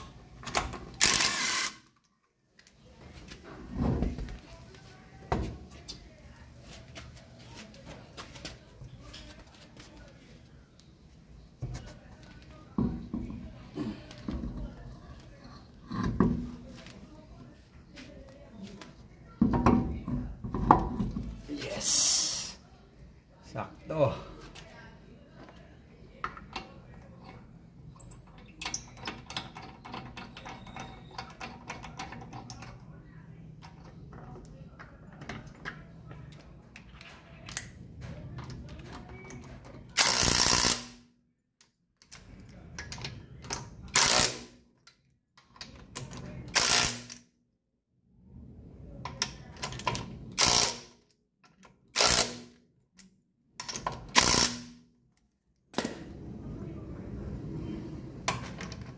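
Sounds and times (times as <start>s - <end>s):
ratchet wrench clicking rapidly: 1.0s - 1.8s.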